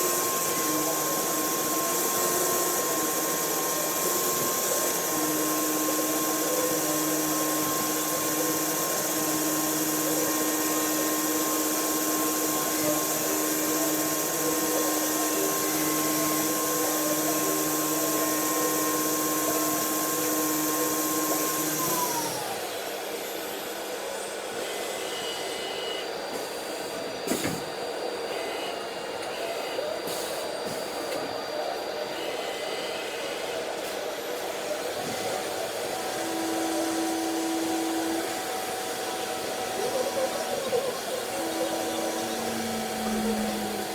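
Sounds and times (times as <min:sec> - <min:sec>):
electric motor whining: 0:34.2 - 0:43.9.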